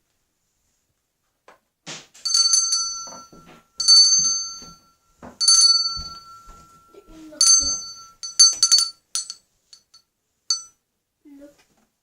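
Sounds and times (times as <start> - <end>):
metallic bell ringing: 2.2 - 10.7.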